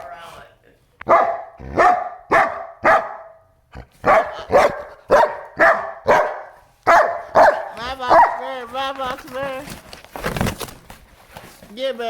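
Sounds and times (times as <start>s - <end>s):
dog barking: 1.0s - 8.6s.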